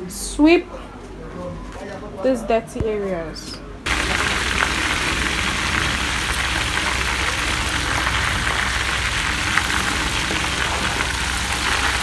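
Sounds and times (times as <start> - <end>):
fish frying in hot oil: 3.9 - 12.0.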